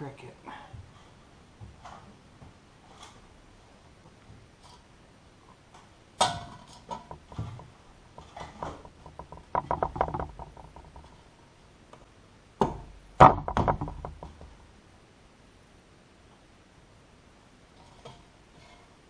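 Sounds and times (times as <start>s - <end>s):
fan parts knocking and rattling: 5.8s - 11.6s, 12.6s - 14.7s.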